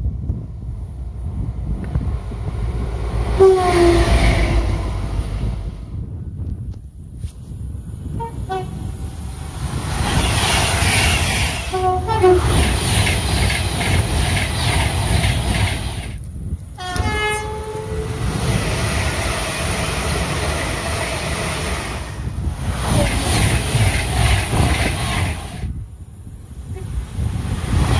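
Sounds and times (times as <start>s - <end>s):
train passing rush and rumble: 0.0s - 27.9s
two-tone train horns: 3.4s - 4.7s, 8.2s - 8.9s, 11.6s - 12.6s, 16.8s - 18.3s.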